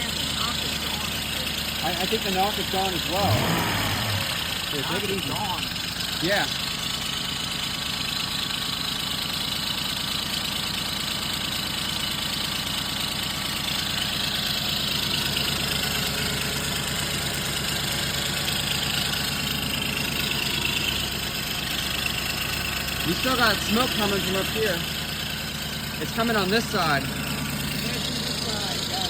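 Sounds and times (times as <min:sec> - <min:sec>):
car engine idling: 0:00.0 - 0:29.0.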